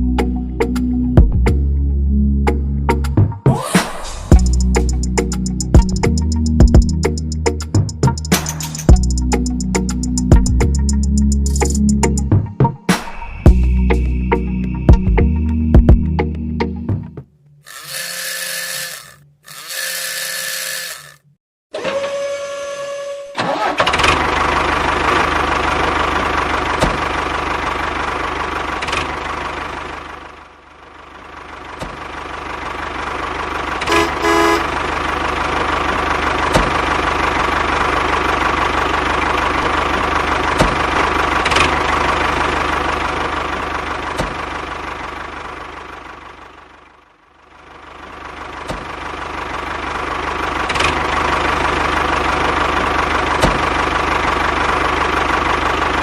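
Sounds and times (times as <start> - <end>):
small tractor engine drone: 3.7 - 12.2, 17.6 - 56.0
short horn toot: 33.9 - 34.8.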